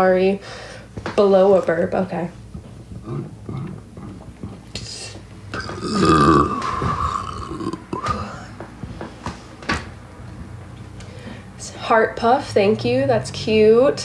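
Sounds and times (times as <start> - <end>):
woman burping: 5.5 - 8.5.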